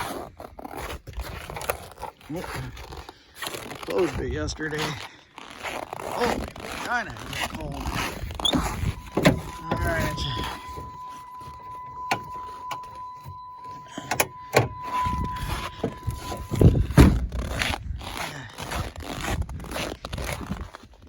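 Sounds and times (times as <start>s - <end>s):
steady high tone: 7.8s - 17.2s
heavy thump: 14.0s - 17.4s.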